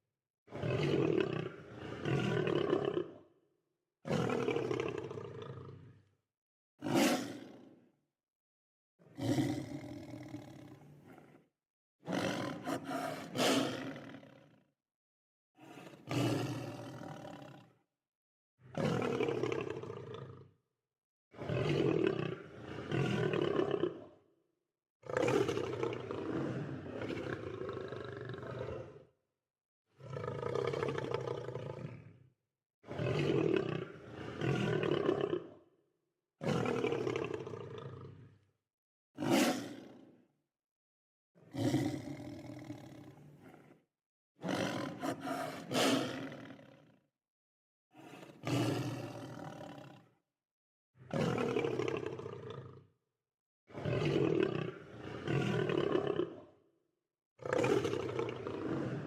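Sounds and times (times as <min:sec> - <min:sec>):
lion roaring: 0:00.6 - 0:03.2, 0:09.1 - 0:11.4, 0:12.1 - 0:14.4, 0:15.6 - 0:17.6, 0:25.1 - 0:29.0, 0:30.0 - 0:32.2, 0:32.9 - 0:35.6, 0:39.2 - 0:39.9, 0:41.5 - 0:43.8, 0:44.4 - 0:47.0, 0:48.0 - 0:50.1, 0:51.1 - 0:52.8, 0:53.8 - 0:56.5, 0:57.4 - 0:59.0.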